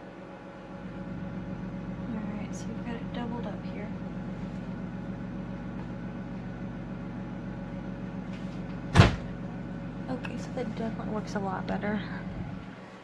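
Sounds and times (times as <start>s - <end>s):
steady low hum: 0.0s - 13.0s
door thumping: 8.9s - 9.4s.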